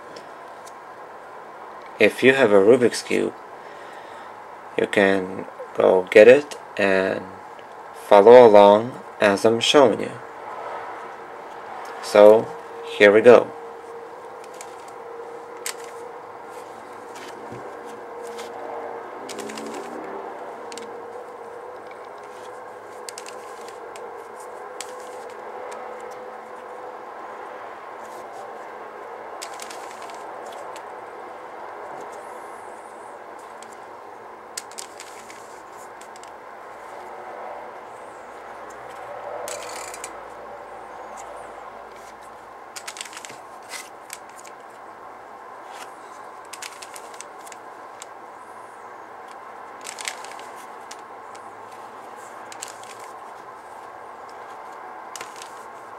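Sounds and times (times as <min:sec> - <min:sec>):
steady background hum: 0:00.0 - 0:55.9
plastic puzzle cube clicks: 0:19.3 - 0:20.0, 0:23.0 - 0:23.8, 0:29.4 - 0:30.8, 0:34.6 - 0:36.3, 0:39.5 - 0:40.1, 0:42.8 - 0:44.6, 0:46.5 - 0:48.1, 0:49.8 - 0:51.0, 0:55.2 - 0:55.6.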